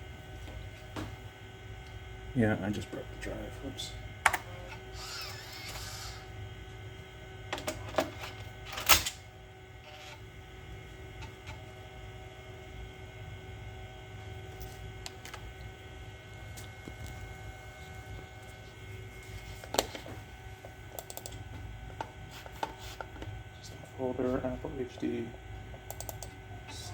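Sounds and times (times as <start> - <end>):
computer humming: 0.0 - 26.9
sharp clicks: 21.0 - 21.4, 25.9 - 26.4.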